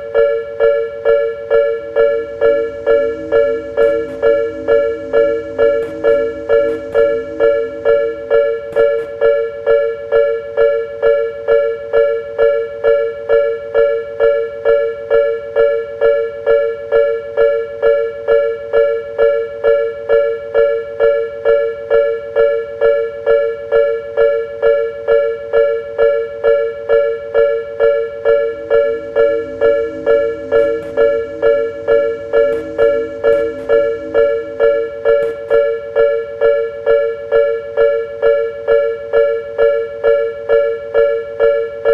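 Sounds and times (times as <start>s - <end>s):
crossing bell two-tone ding: 0.2s - 11.6s, 26.1s - 41.9s.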